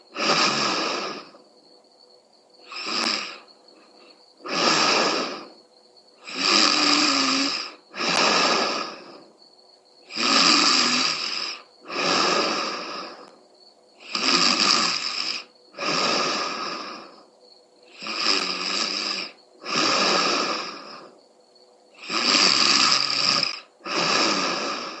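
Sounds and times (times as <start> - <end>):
woman snoring loudly: 0.0 - 1.4, 2.6 - 3.5, 4.4 - 5.6, 6.2 - 9.3, 10.0 - 13.3, 14.0 - 17.3, 17.9 - 21.2, 22.0 - 25.0.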